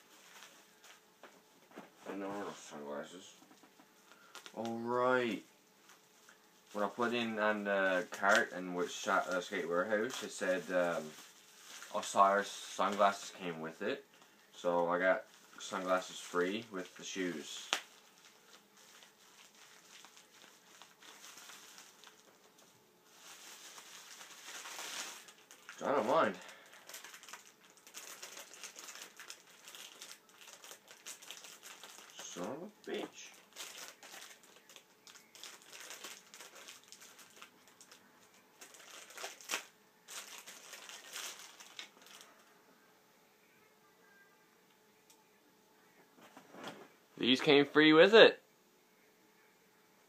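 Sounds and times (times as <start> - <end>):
packaging crinkling and rustling: 0.0 - 1.1, 5.8 - 14.4, 15.0 - 42.4.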